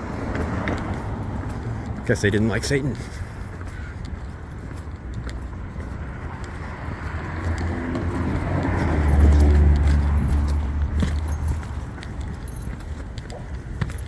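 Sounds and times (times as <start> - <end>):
vehicle passing by: 0.0 - 14.0.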